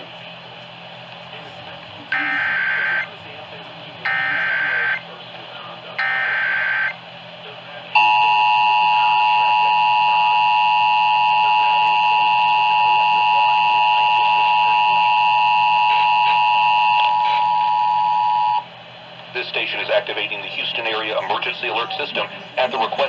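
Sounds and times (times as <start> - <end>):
two-tone alert signal: 2.2 - 3.0, 4.1 - 5.0, 6.0 - 6.9
screechy data burst: 2.2 - 3.1, 4.1 - 5.0, 6.0 - 7.0.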